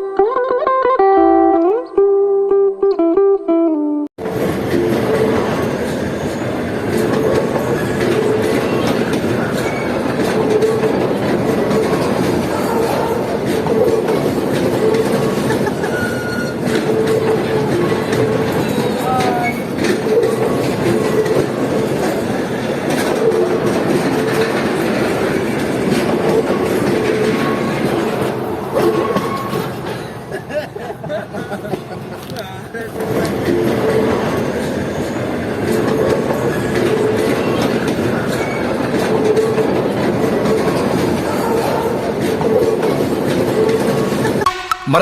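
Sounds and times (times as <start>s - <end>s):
toy train wheels rumbling: 4.2s - 44.5s
clicks over rails: 4.7s - 30.2s, 35.6s - 44.4s.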